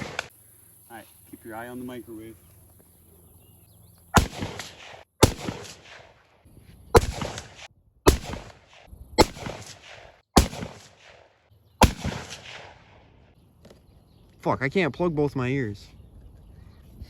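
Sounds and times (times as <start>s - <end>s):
gunshots with echo: 0.0s - 0.3s, 4.2s - 6.2s, 7.0s - 13.0s.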